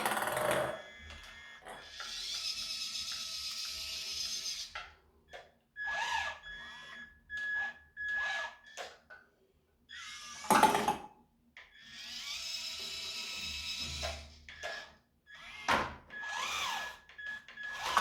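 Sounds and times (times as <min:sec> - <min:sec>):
small electric motors whirring: 0:00.8 - 0:04.8, 0:05.8 - 0:08.8, 0:09.9 - 0:10.8, 0:11.8 - 0:18.0.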